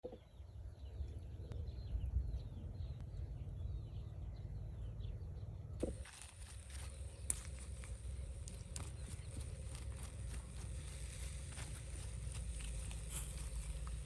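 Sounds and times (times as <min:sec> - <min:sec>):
small birds chirping: 0:00.0 - 0:14.0
outdoor rustling and ticking: 0:05.8 - 0:14.0.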